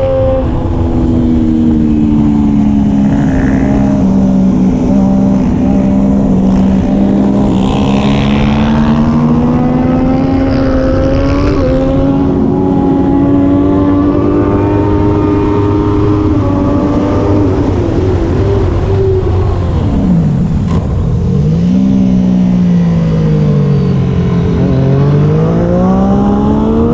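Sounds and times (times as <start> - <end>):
motorcycle engine revving under load: 0.0 - 19.9.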